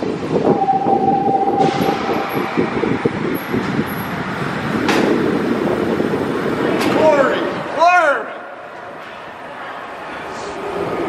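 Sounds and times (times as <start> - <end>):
steady tone: 0.0 - 4.8
vehicle running noise: 0.0 - 7.2.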